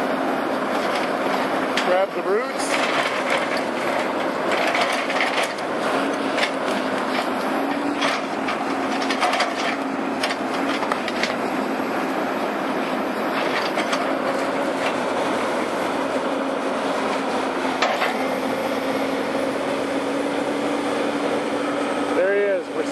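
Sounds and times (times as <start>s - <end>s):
heavy machine engine running: 0.0s - 22.9s.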